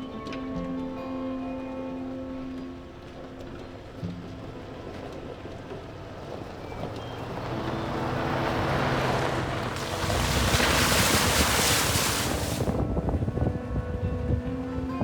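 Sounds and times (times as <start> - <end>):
surf: 0.1 - 15.0
rushing wind: 5.4 - 15.0.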